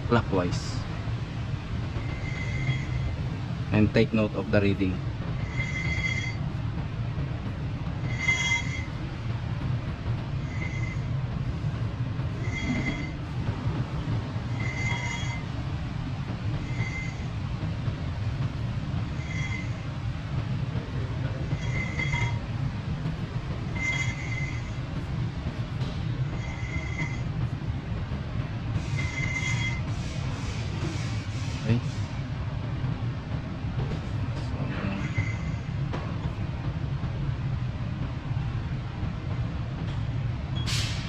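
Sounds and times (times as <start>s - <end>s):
steady low hum: 0.0s - 41.0s
brake rotor squeal: 2.0s - 3.2s, 5.4s - 6.5s, 8.0s - 8.9s, 10.4s - 11.1s, 12.4s - 13.2s, 14.5s - 15.5s, 16.6s - 17.4s, 19.2s - 19.9s, 21.4s - 22.5s, 23.7s - 24.8s, 26.3s - 27.3s, 28.9s - 31.2s, 34.8s - 35.7s.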